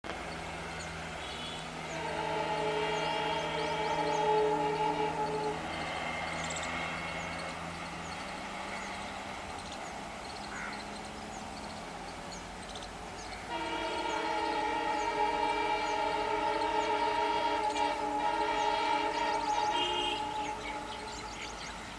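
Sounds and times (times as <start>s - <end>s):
rail noise: 0.0s - 21.9s
locomotive engine humming: 0.1s - 21.9s
locomotive air horn: 1.2s - 7.2s, 13.5s - 21.8s.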